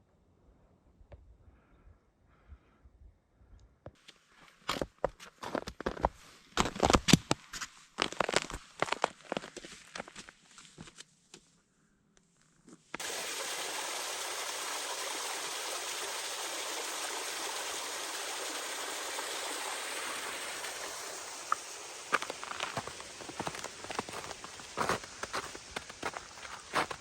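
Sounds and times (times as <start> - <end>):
footsteps on trail: 4.4 - 11.0, 20.6 - 27.0
stream water rushing: 13.0 - 27.0.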